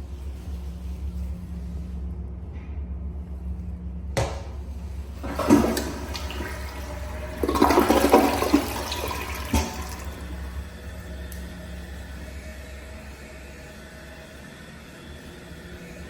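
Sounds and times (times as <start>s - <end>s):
short knock: 4.2s - 4.6s
toilet flush water rushing: 5.0s - 11.5s.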